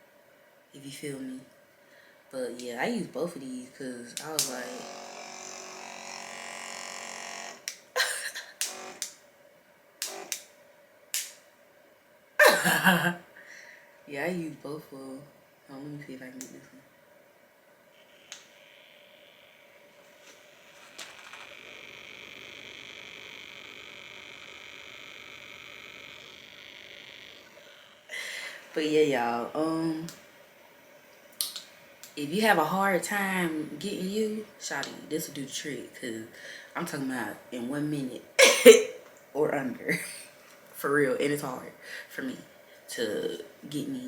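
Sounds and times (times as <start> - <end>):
small motor buzzing: 4.5 - 9.2, 10.0 - 10.5, 17.9 - 28.8.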